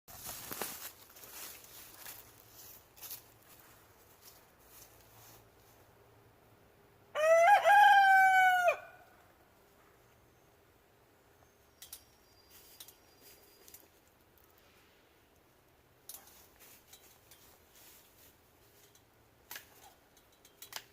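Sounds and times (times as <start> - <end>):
rooster crowing: 7.1 - 9.1.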